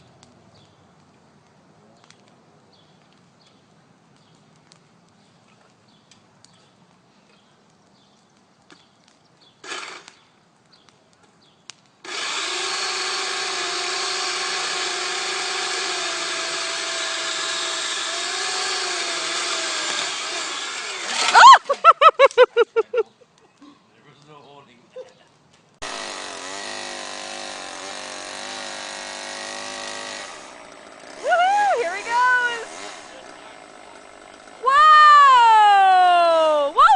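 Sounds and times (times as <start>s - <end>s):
chainsaw running at high revs: 9.6s - 10.1s, 12.0s - 21.4s, 25.8s - 34.7s.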